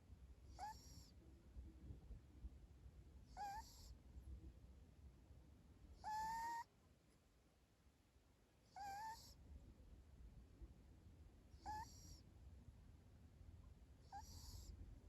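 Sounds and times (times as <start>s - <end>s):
dog snoring with whistling notes: 0.5s - 1.2s, 3.3s - 4.0s, 6.0s - 6.7s, 8.7s - 9.4s, 11.6s - 12.2s, 14.0s - 14.8s.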